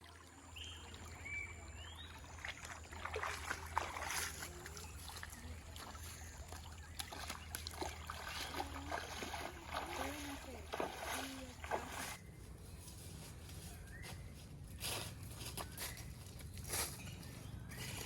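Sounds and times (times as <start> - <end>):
water splashing and trickling: 0.0 - 12.2.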